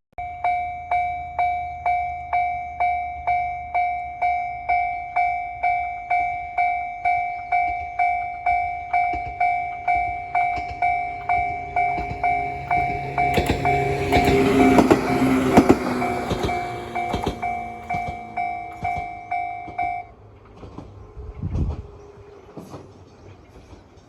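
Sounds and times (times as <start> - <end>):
level crossing warning bell: 0.2 - 20.2
approaching train rumble: 5.6 - 24.0.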